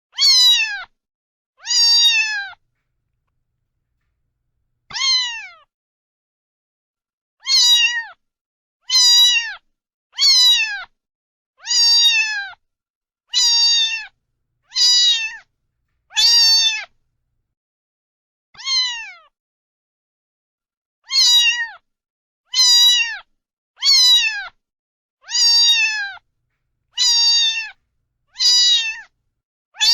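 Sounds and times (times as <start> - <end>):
cat meowing: 14.7 - 15.4, 26.9 - 29.1.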